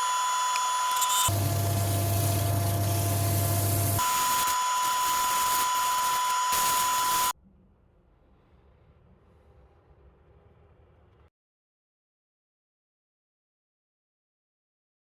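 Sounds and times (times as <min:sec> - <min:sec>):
wood lathe whining: 0:00.0 - 0:07.3.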